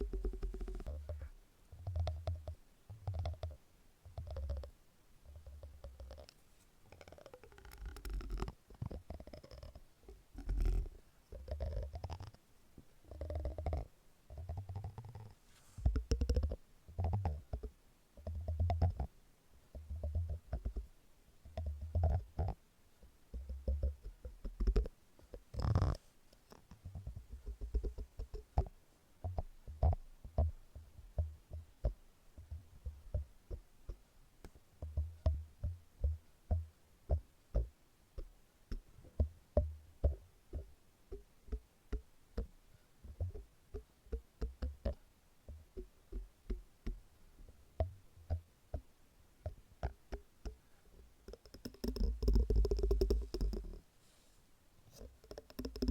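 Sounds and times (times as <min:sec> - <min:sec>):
low rubbing on silicone: 0:13.1 - 0:16.6, 0:51.4 - 0:55.9
quick tapping on silicone: 0:51.3 - 0:53.9, 0:54.9 - 0:55.9.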